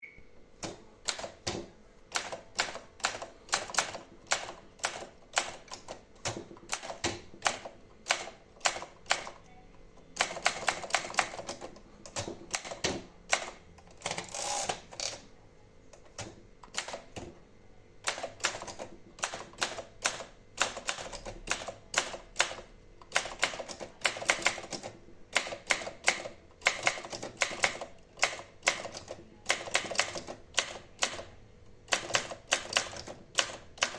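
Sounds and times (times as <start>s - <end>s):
typewriter key strikes: 18.0s - 31.2s, 31.9s - 33.9s.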